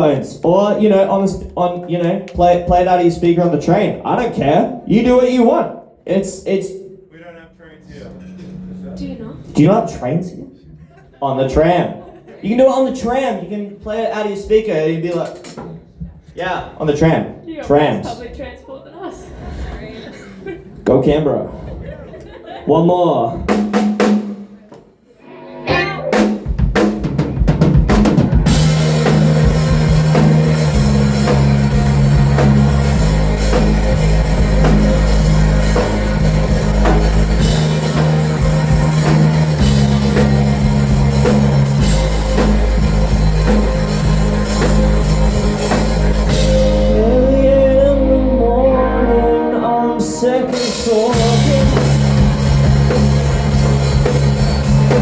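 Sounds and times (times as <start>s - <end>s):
drum hits: 15.1s - 16.2s, 26.1s - 47.3s, 50.5s - 55.0s
wavering guitar line: 25.2s - 26.5s, 28.1s - 55.0s
live rock band playing: 25.2s - 55.0s.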